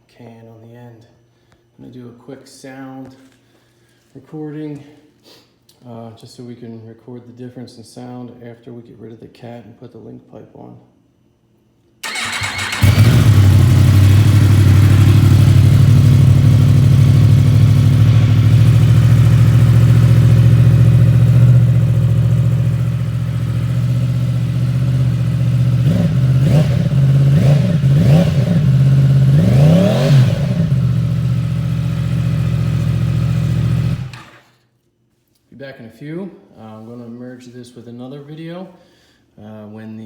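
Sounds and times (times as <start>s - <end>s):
motorcycle engine idling: 12.0s - 34.5s
motorcycle engine revving: 12.0s - 34.5s.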